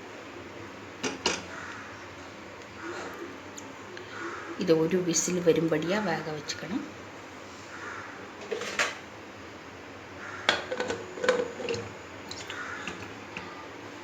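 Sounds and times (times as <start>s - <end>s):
metal utensils clinking and clattering: 8.4s - 9.0s, 10.5s - 11.9s.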